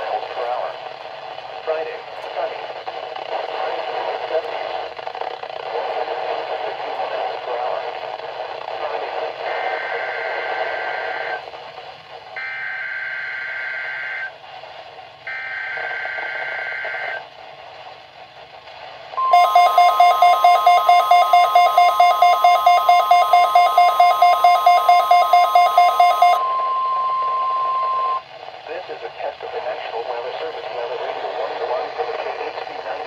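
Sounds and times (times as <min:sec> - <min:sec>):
pulsing electronic beep: 0:19.2 - 0:28.2
steady warning alarm tone: 0:19.2 - 0:28.2.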